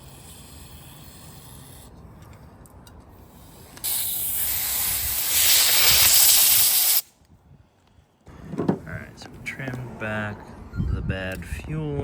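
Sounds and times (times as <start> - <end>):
pressurised spray hissing: 3.8 - 7.0.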